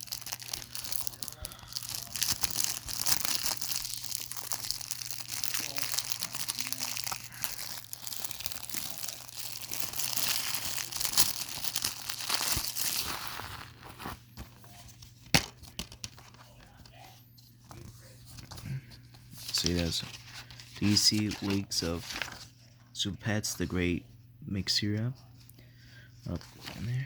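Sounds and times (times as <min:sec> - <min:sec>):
plastic shrink-wrap crinkling: 0:00.0 - 0:16.4, 0:19.3 - 0:22.5.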